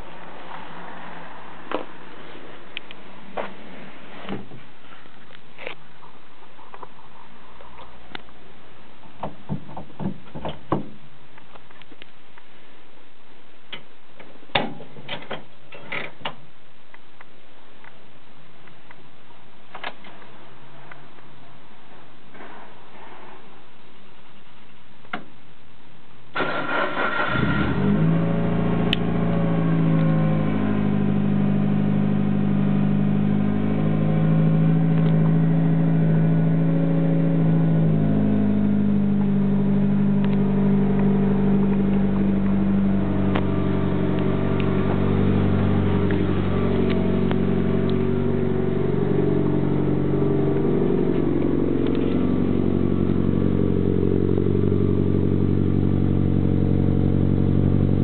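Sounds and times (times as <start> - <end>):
car engine cranking: 26.4 - 30.3, 37.4 - 58.0
car engine idling: 26.4 - 58.0.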